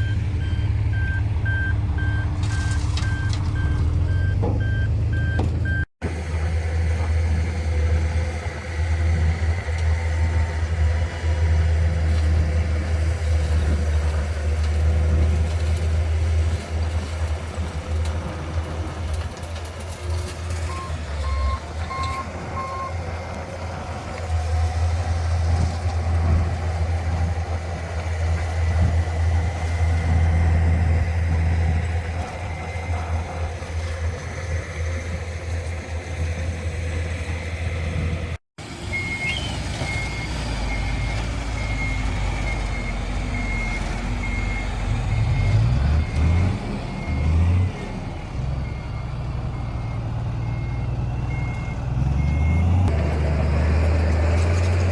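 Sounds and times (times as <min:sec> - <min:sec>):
reversing alarm beeping: 0:00.0 - 0:05.9, 0:38.9 - 0:52.9
diesel engine under load: 0:00.0 - 0:54.9.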